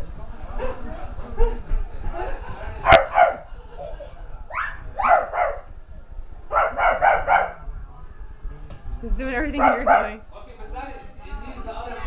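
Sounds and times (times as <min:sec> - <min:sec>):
dog barking: 0:02.8 - 0:03.5, 0:04.5 - 0:05.7, 0:06.5 - 0:07.6, 0:09.6 - 0:10.2.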